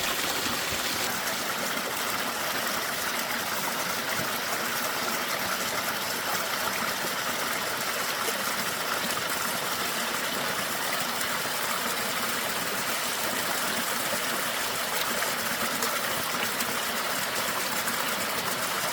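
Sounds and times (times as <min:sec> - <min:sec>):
stream rushing over rocks: 0:00.0 - 0:18.9.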